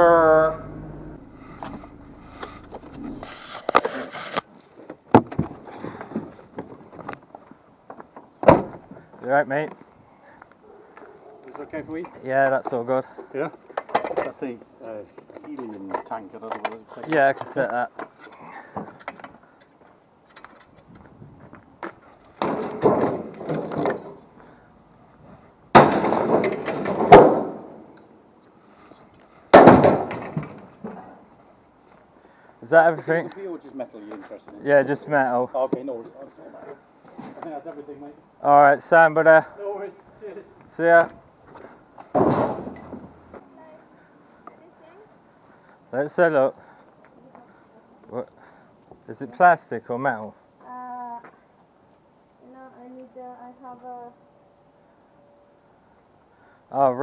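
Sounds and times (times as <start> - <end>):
vehicle engine hum: 0.0 - 3.5
sharp clunks and knocks: 8.2 - 8.8, 22.4 - 24.2, 25.7 - 27.8, 29.5 - 31.0, 42.0 - 43.2.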